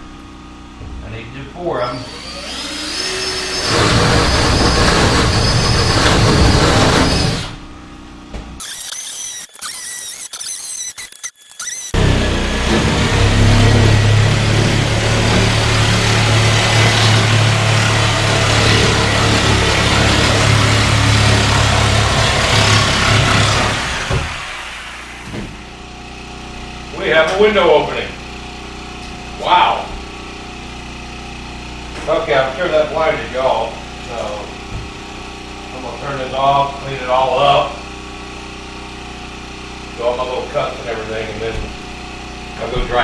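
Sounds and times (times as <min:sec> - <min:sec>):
reciprocating saw cutting boards: 0:01.6 - 0:07.9, 0:08.5 - 0:38.3
power drill boring through wood: 0:01.7 - 0:07.9, 0:08.6 - 0:29.4
wavering high tones: 0:08.6 - 0:12.0.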